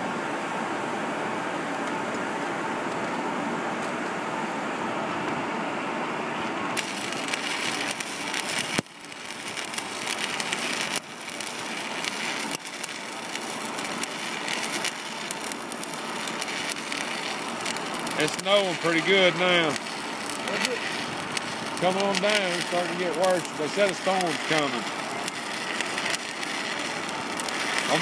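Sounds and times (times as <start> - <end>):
steady rushing noise: 0.0 - 28.0
welding arc crackling and sizzling: 6.6 - 28.0.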